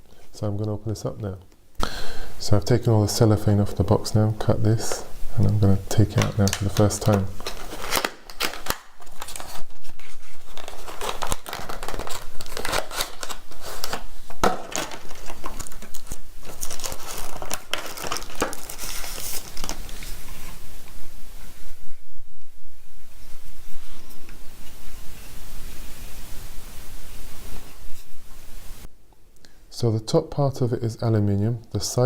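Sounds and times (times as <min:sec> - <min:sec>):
packaging crinkling and rustling: 0:04.4 - 0:21.0.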